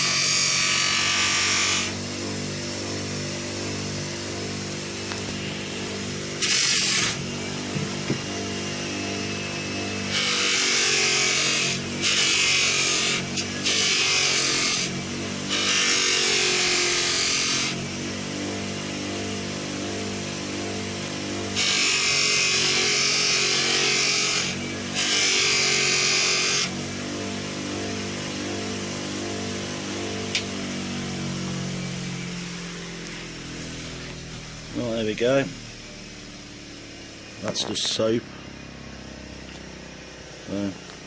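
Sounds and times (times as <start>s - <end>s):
power tool polishing metal: 0.0s - 36.0s
steady low hum: 1.3s - 13.6s, 26.8s - 41.0s.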